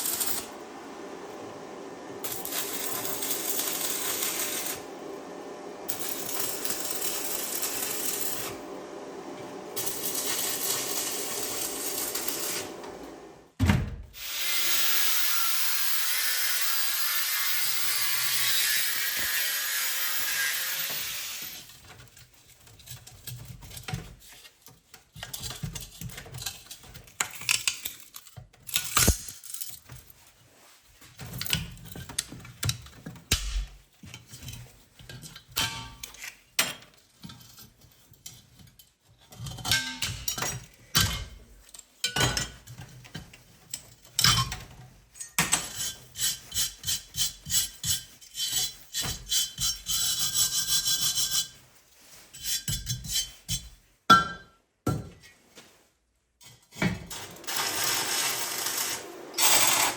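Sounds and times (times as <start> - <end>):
steady tool noise: 0.0 - 13.4, 14.2 - 21.8, 57.1 - 59.9
metal parts clicking and clanking: 21.9 - 30.2.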